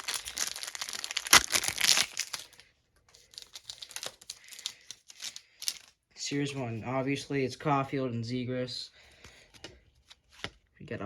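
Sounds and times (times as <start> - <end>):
foil wrapper tearing and crinkling: 0.0 - 2.6, 3.2 - 6.0
sharp crack of foil: 0.0 - 2.6
cards and wrapper rustling: 0.0 - 6.6.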